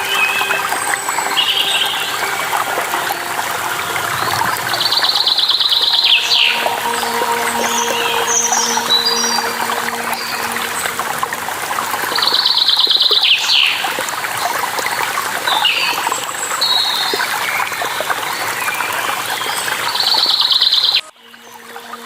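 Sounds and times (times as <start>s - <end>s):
birds singing: 0.0s - 11.0s
water running: 0.0s - 20.1s.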